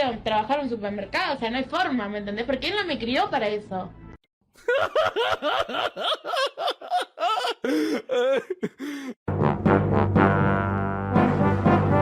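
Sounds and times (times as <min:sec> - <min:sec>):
person laughing hard: 0:04.6 - 0:09.2
brass music: 0:09.3 - 0:12.0.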